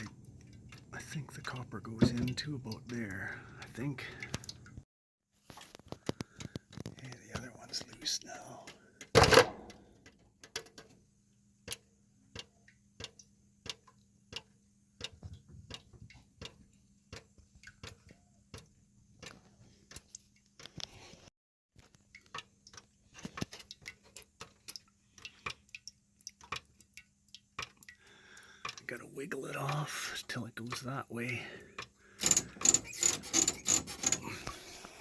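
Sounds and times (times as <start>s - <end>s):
fitting clicking on pipe: 31.8s - 34.6s.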